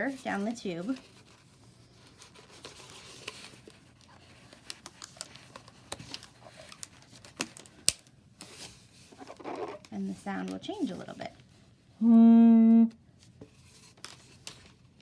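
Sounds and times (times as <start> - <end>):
balloon handling clicks and rubbing: 0.2 - 11.4.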